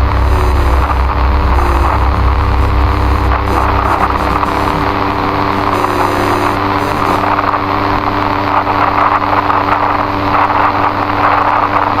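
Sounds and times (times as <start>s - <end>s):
low humming tone: 0.0s - 7.8s
loud steady noise drone: 0.0s - 12.0s.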